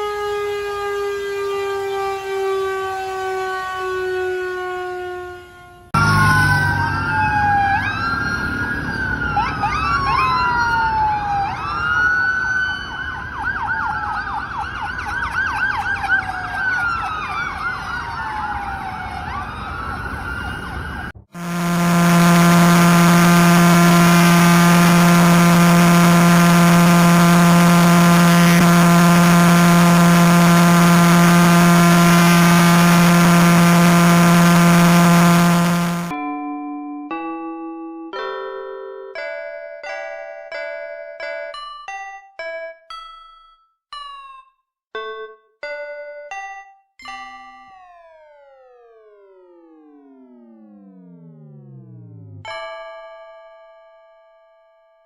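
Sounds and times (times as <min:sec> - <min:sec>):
sirens wailing: 0:00.0 - 0:36.1
low buzzing alarm tone: 0:21.3 - 0:36.1.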